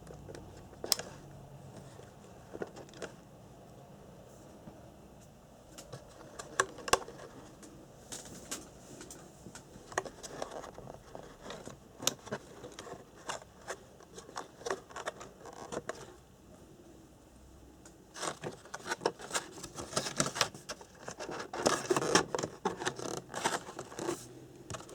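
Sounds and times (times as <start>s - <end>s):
packaging rustling: 18.1s - 24.9s.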